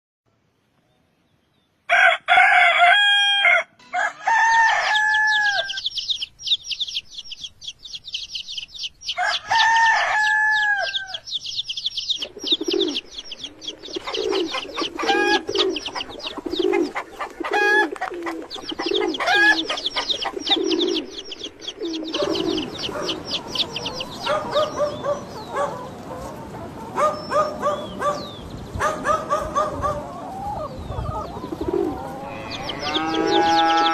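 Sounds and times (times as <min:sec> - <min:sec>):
rooster crowing: 0:01.9 - 0:05.9, 0:09.2 - 0:11.3, 0:31.9 - 0:33.9
bird calls: 0:04.8 - 0:33.9
high-pitched bird chirping: 0:05.0 - 0:09.6, 0:10.2 - 0:17.8, 0:18.5 - 0:25.8
low cooing: 0:21.8 - 0:27.8, 0:29.4 - 0:33.9.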